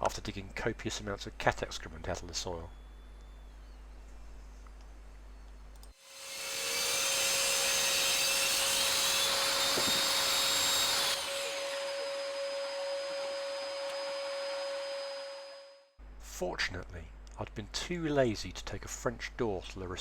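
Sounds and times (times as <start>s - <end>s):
small electric motor whooshing: 5.9s - 15.9s.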